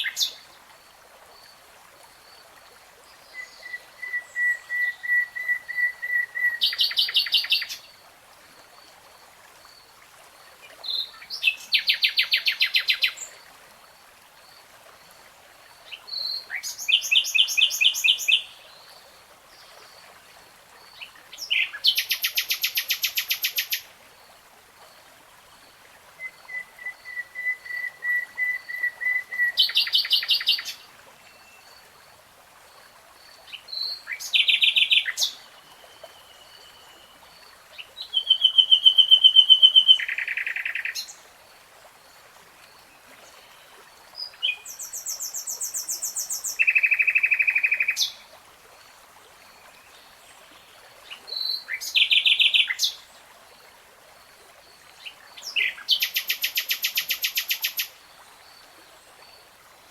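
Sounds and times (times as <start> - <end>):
nightingale singing: 38.0 - 41.0, 44.2 - 48.1.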